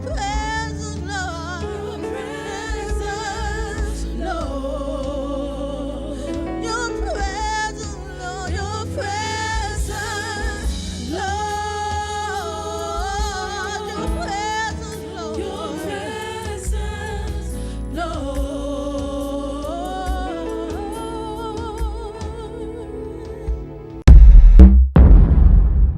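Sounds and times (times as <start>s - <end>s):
keyboard: 0.0s - 24.2s
steady low bass: 23.5s - 25.9s.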